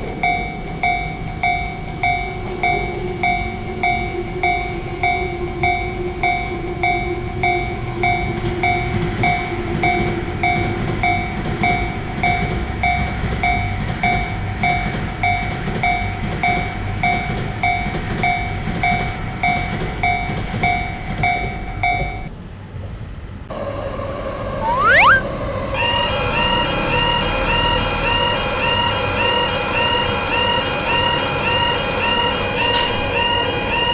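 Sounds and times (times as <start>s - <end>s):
passing train rumble: 0.0s - 24.6s.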